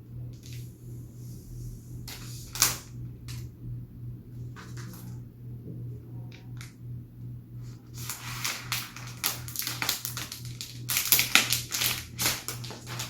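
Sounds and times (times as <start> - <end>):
plastic film peeling and crackling: 2.1 - 3.4, 7.6 - 13.0.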